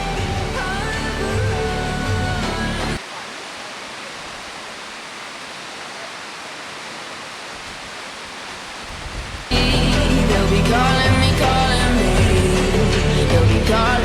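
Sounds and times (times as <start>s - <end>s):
background music: 0.0s - 3.0s, 9.5s - 14.0s
waterfall rushing: 0.0s - 14.0s.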